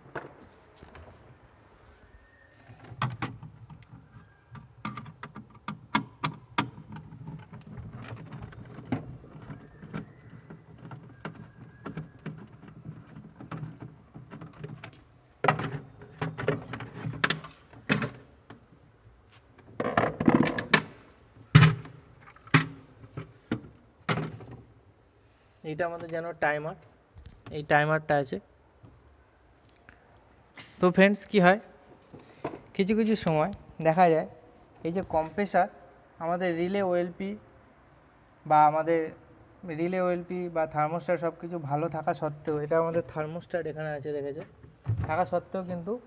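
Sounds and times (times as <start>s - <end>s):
knocks and thunks: 44.8s - 45.3s.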